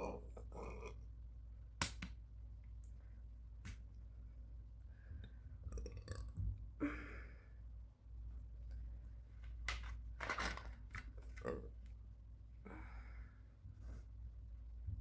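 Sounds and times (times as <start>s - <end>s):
steady low hum: 0.0s - 9.5s.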